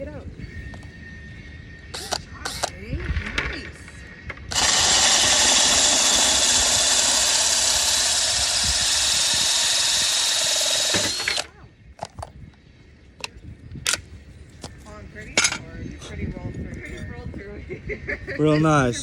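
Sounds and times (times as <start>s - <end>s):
power drill boring through tile: 4.5s - 11.5s.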